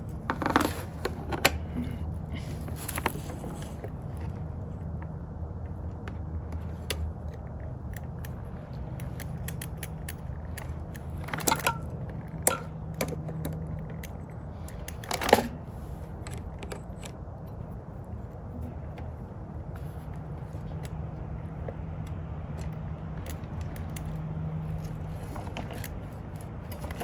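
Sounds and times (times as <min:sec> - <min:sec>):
steady low hum: 0:00.0 - 0:27.0
metal parts clinking: 0:08.2 - 0:17.7.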